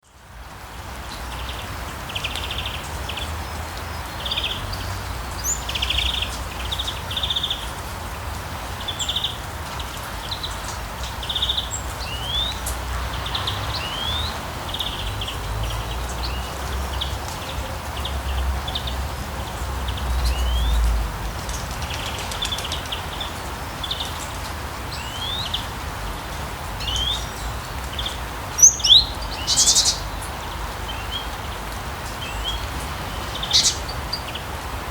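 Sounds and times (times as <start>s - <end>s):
steady rain: 0.0s - 34.9s
birds chirping and trilling: 10.2s - 34.6s.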